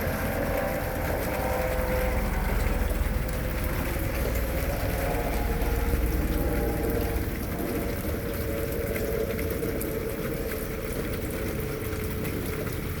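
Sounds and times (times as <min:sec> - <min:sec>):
low rumble: 0:00.0 - 0:13.0
raindrop ticks: 0:00.0 - 0:13.0.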